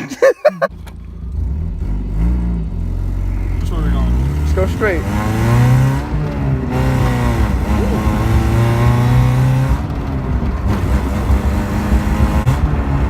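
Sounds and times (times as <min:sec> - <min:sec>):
car engine under load: 0:00.0 - 0:13.0.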